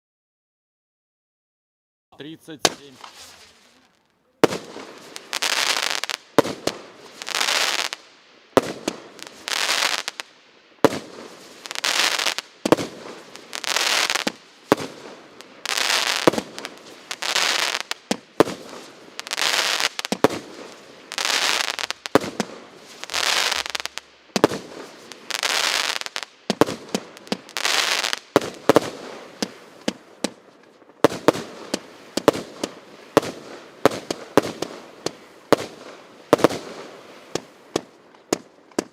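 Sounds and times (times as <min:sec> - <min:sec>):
firework hissing crackle: 0:02.2 - 0:38.9
firework launch thumps: 0:02.5 - 0:05.7.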